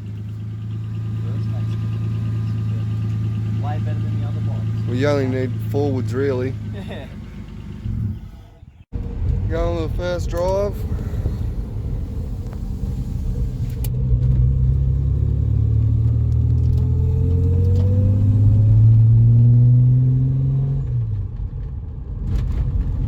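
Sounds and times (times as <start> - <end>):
car engine revving through gear: 0.0 - 21.2.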